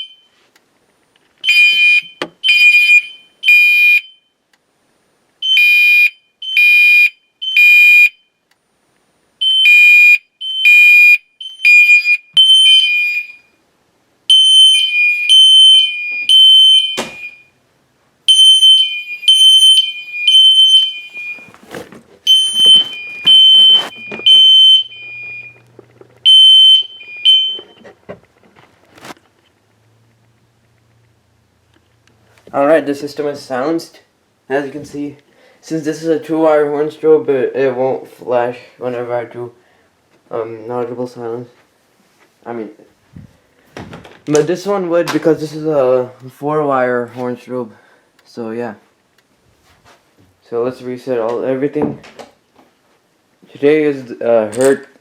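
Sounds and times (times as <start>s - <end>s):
fire alarm horns beeping: 0.0s - 0.4s, 1.4s - 4.4s, 5.4s - 8.4s, 9.4s - 13.6s, 14.3s - 17.6s, 18.3s - 21.6s, 22.3s - 27.8s.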